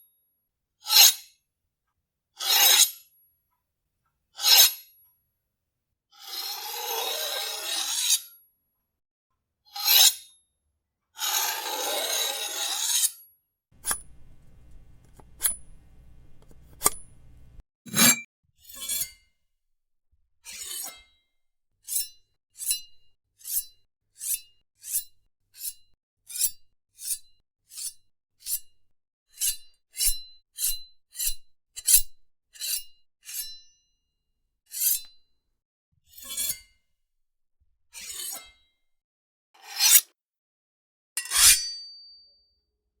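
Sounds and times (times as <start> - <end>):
metal blades drawn from sheaths: 13.8 - 14.1, 17.9 - 18.3, 39.6 - 40.0, 41.2 - 42.0.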